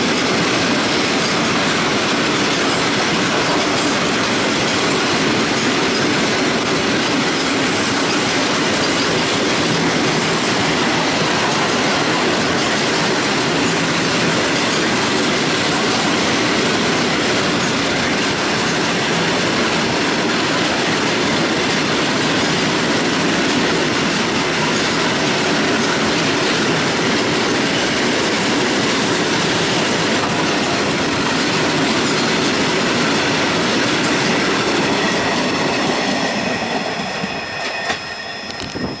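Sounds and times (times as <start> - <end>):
train wheels rumbling on track: 0.0 - 39.0
high wheel squealing: 31.2 - 39.0.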